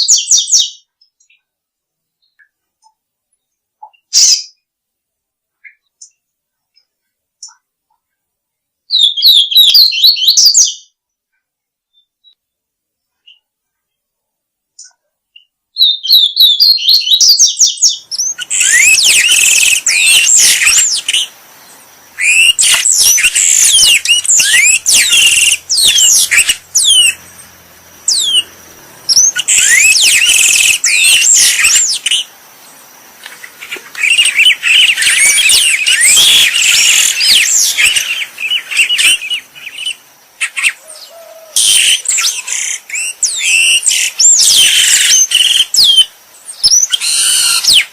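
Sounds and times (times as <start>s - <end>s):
songbird chattering and whistling: 8.9s - 11.0s, 14.8s - 47.9s.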